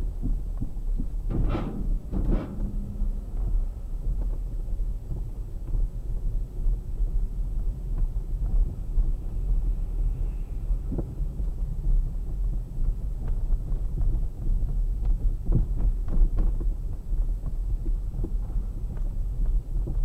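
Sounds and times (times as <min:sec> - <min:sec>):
steering rack knocking: 0:01.3 - 0:03.8.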